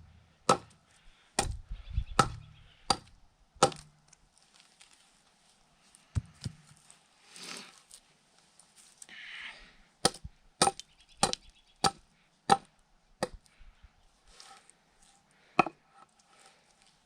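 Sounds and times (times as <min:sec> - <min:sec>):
hatchet chopping into log: 0:00.5 - 0:00.8, 0:01.4 - 0:01.6, 0:02.2 - 0:03.9, 0:10.0 - 0:13.4.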